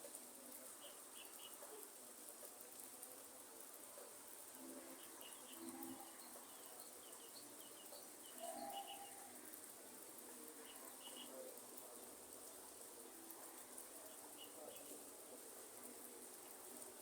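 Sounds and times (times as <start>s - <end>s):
light rain hissing: 0.0s - 17.0s
low bird cooing: 8.4s - 9.3s.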